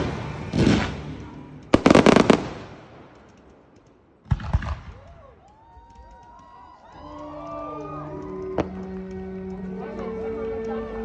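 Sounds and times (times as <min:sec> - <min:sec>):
fireworks crackling: 0:00.0 - 0:05.1
fireworks exploding: 0:00.0 - 0:05.1.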